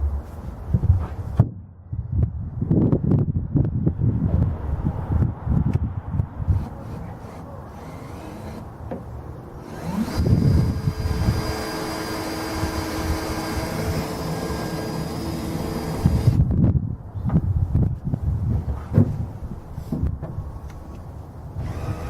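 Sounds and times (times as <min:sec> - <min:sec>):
electric drill drilling through metal: 0:06.6 - 0:08.7, 0:09.6 - 0:16.4, 0:21.6 - 0:22.0.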